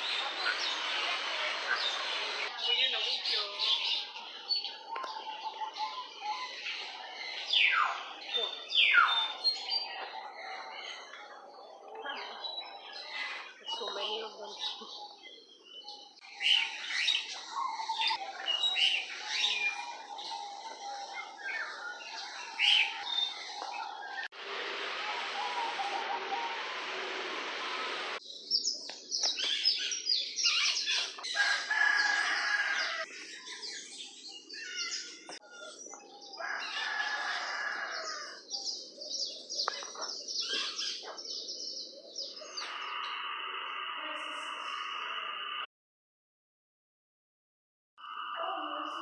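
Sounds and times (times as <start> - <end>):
birds calling and chirping: 0.0 - 45.3
steady hiss: 24.4 - 28.2.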